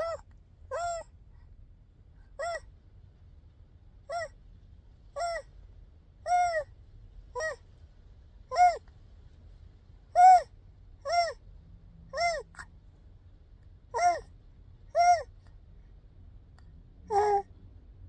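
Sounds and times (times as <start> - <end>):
baby squealing coos: 0.0 - 1.1, 2.4 - 2.6, 4.1 - 4.3, 5.2 - 5.5, 6.3 - 6.6, 7.4 - 7.6, 10.2 - 10.5, 11.1 - 11.4, 14.0 - 14.2, 15.0 - 15.3, 17.1 - 17.5.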